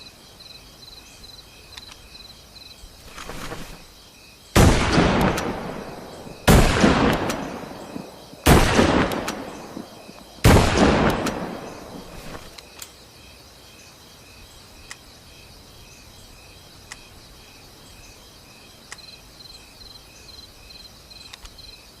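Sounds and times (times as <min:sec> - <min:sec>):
crickets chirping: 0:00.0 - 0:22.0
rifle shots with echo: 0:04.6 - 0:12.5.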